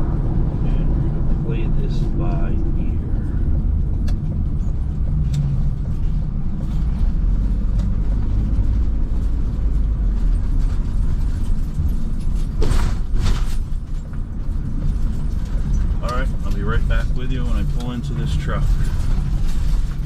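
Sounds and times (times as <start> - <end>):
loud rushing noise: 0.0 - 3.7
vehicle engine and road rumble: 0.0 - 20.0.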